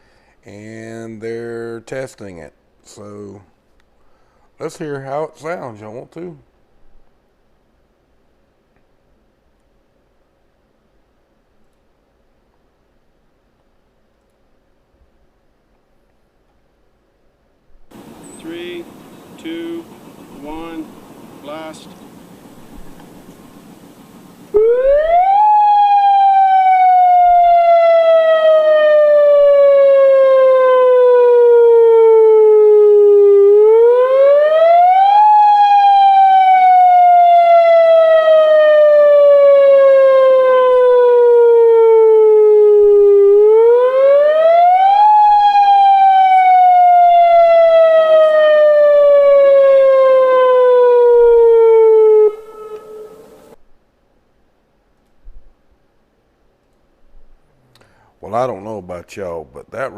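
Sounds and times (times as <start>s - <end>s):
loud warning siren wail: 17.9s - 23.3s, 24.5s - 53.6s.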